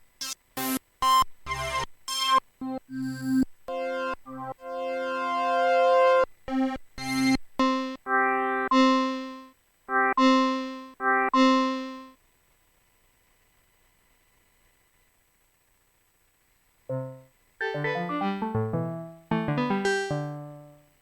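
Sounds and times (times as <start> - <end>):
synthesizer chords: 16.9 - 20.8.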